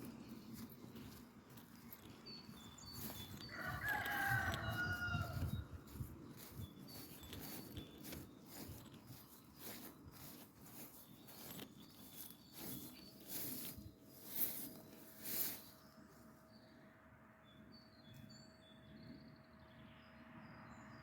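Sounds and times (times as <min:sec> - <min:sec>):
rooster crowing: 0:03.0 - 0:06.0
small birds calling: 0:05.0 - 0:15.8.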